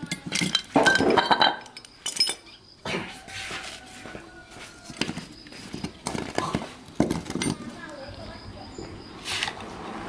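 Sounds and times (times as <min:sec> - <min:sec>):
metal tools clinking and clattering: 0:00.0 - 0:02.7, 0:04.9 - 0:07.9.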